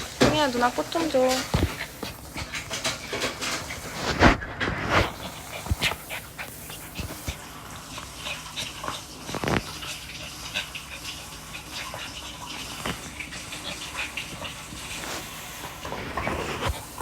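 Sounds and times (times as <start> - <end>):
dog breathing: 1.1 - 17.0.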